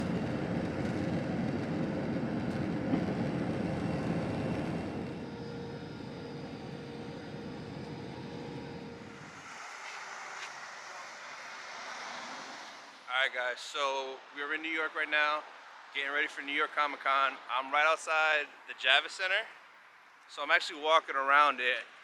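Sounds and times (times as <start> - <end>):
steady hum: 0.0 - 10.4
low vehicle rumble: 0.0 - 11.2.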